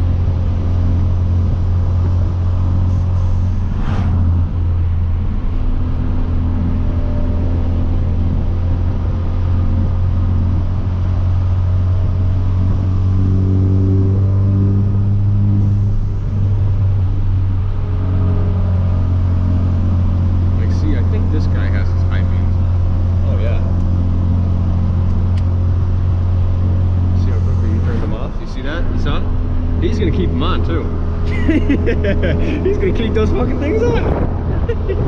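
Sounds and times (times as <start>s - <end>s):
car exhaust drone: 0.0s - 35.0s
turbo whoosh: 2.9s - 6.2s.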